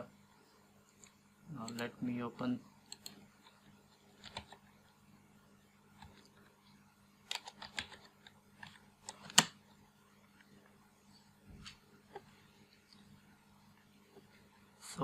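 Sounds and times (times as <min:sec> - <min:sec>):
faint low hum: 0:00.0 - 0:15.0
computer keyboard clicks: 0:07.3 - 0:09.5.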